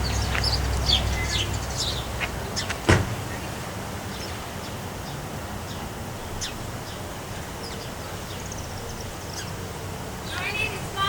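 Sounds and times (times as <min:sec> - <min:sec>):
bird chirps: 0:00.0 - 0:02.7
wind buffeting microphone: 0:00.0 - 0:11.0.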